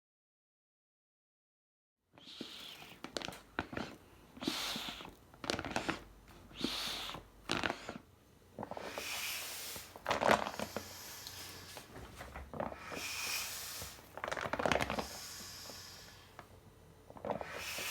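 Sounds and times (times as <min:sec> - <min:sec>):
pump rush of air: 0:08.7 - 0:14.2, 0:17.4 - 0:17.9.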